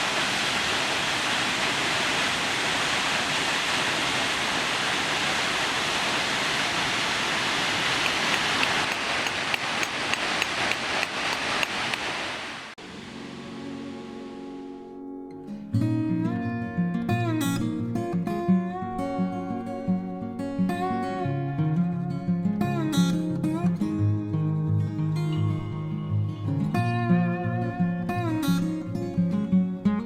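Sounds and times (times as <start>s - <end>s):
waterfall rushing: 0.0s - 14.8s
acoustic guitar music: 12.8s - 30.0s.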